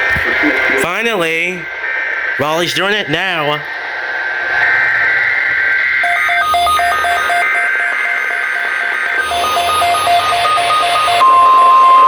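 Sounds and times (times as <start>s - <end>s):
steady warning alarm tone: 5.0s - 12.0s
buzzing data burst: 5.8s - 12.0s
rapid electronic alert beeps: 6.0s - 12.0s.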